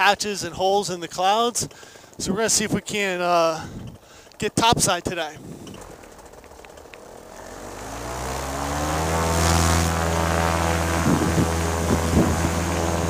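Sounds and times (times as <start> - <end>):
paramotor engine revving: 5.5 - 13.0.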